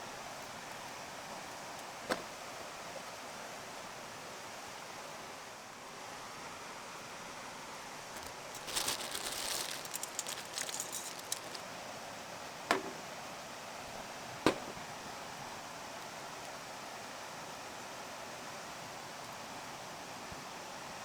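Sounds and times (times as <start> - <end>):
steady hiss: 0.0 - 21.0
light clicks and rustling: 8.1 - 11.7
sharp single knocks: 12.7 - 13.1, 14.5 - 14.8.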